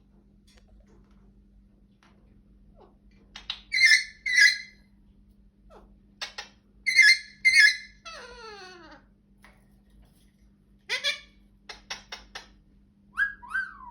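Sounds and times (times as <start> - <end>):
parrot squawking harshly: 3.7 - 4.7, 6.9 - 8.9.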